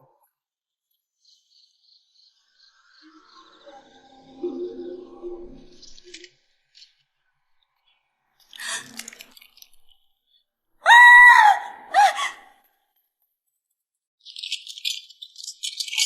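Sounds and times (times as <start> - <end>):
loud high-pitched cry: 10.8 - 12.6.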